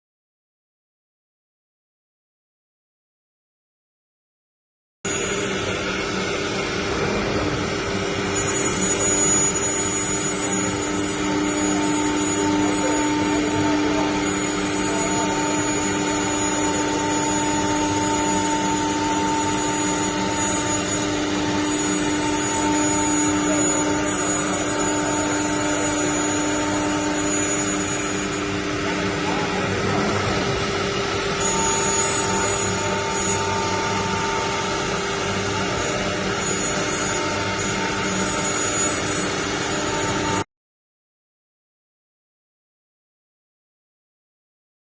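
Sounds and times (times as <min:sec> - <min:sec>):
wood router machine whine: 0:05.1 - 0:40.5.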